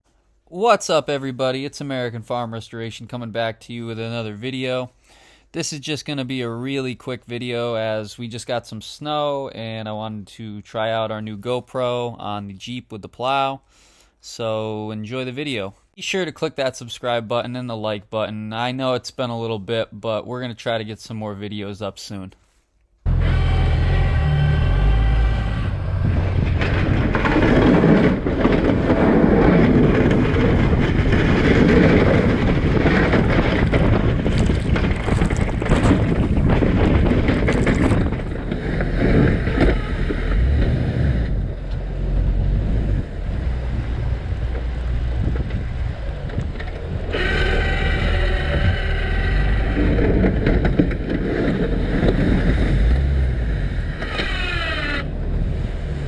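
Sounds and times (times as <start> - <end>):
whining tone: 23.1 - 51.6, 52.7 - 55.5
plow scraping icy snow: 23.1 - 56.0
vehicle engine low rumble: 23.1 - 56.0
wind buffeting microphone: 25.4 - 54.0.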